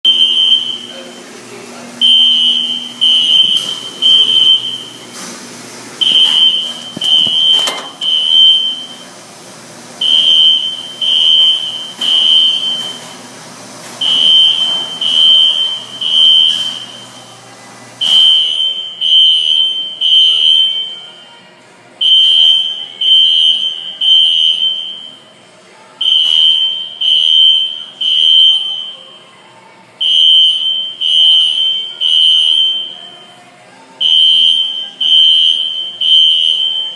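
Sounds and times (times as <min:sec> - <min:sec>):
fire alarm horn beeps: 0:00.0 - 0:01.1, 0:02.0 - 0:05.0, 0:06.0 - 0:09.1, 0:10.0 - 0:13.3, 0:14.0 - 0:17.4, 0:18.0 - 0:21.1, 0:22.0 - 0:25.2, 0:26.0 - 0:29.0, 0:30.0 - 0:33.2, 0:34.0 - 0:36.9.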